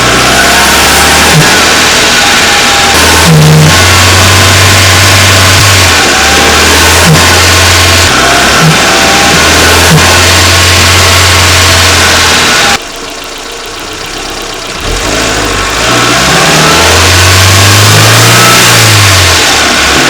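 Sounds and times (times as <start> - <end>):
car engine revving: 0.0 - 20.0.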